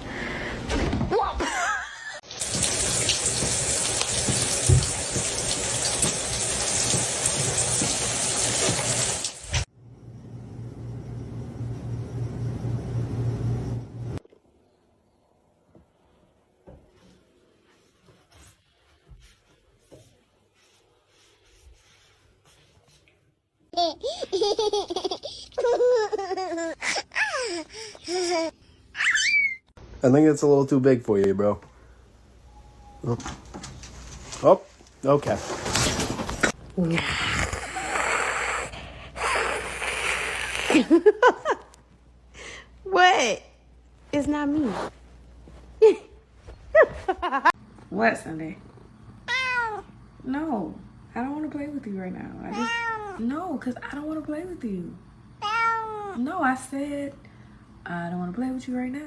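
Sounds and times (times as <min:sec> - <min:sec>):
running water: 0:02.2 - 0:09.7
person laughing loudly: 0:40.5 - 0:41.7.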